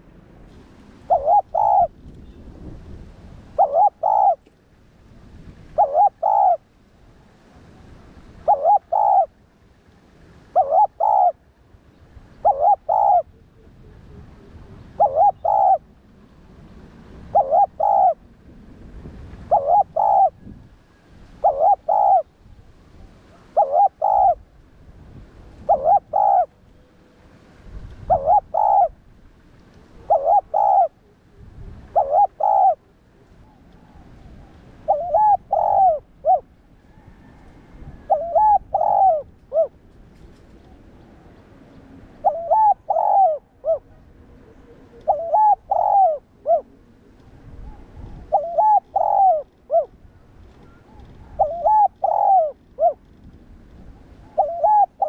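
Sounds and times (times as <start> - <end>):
dove cooing: 1.0 - 2.0, 3.5 - 4.5, 5.7 - 6.6, 8.4 - 9.4, 10.5 - 11.4, 12.4 - 15.9, 17.2 - 18.2, 19.4 - 20.5, 21.4 - 22.4, 23.3 - 24.4, 25.6 - 26.6, 28.0 - 29.0, 29.8 - 39.8, 42.2 - 53.1, 53.9 - 55.0.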